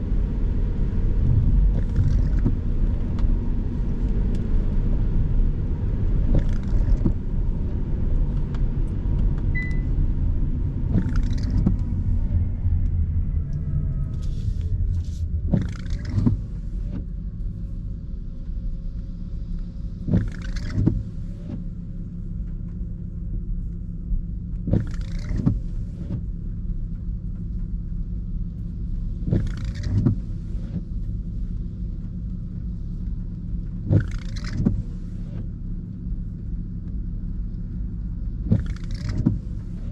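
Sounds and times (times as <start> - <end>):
drivetrain whine: 0.0 - 39.9
road and engine rumble: 0.0 - 39.9
windscreen wipers sweeping: 0.0 - 39.9.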